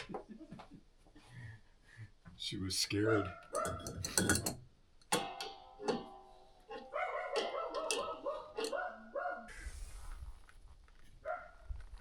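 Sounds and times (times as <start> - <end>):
dog yipping and whining: 6.7 - 9.5.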